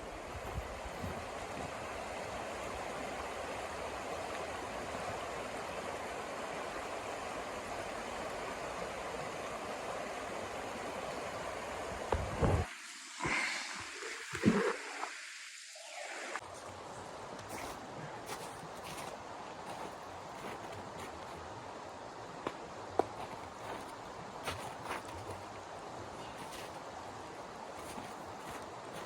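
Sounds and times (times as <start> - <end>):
wind gusts rumbling on microphone: 0.0 - 2.6, 11.9 - 15.2
snowstorm wind rushing: 11.5 - 16.4.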